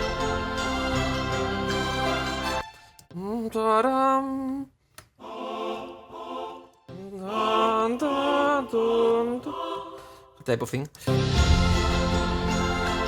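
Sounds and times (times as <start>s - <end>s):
choir singing held notes: 0.0s - 2.7s, 5.2s - 10.4s, 11.1s - 13.0s.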